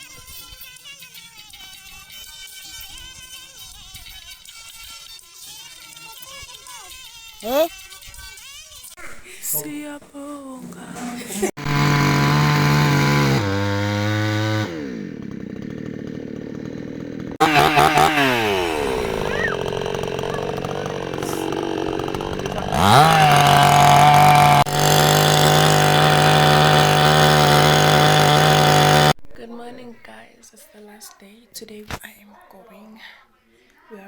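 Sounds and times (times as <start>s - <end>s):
small petrol engine revving: 11.2s - 29.2s.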